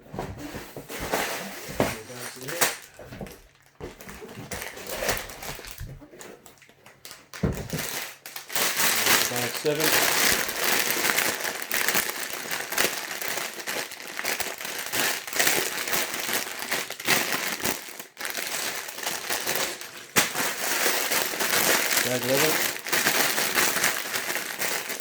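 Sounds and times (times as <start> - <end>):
plastic bags crinkling: 1.4 - 25.0.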